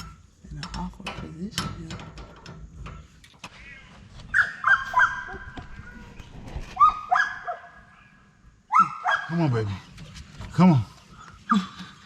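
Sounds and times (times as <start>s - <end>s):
dog whining and yelping: 4.3s - 5.9s, 6.8s - 7.7s, 8.7s - 9.3s.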